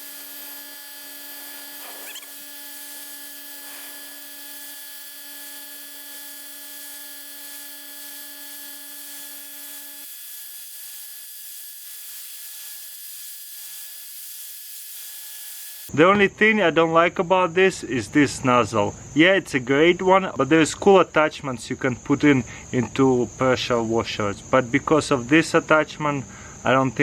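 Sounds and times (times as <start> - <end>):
water jet hissing: 0.0 - 6.7
pressure washer motor whine: 0.0 - 8.8.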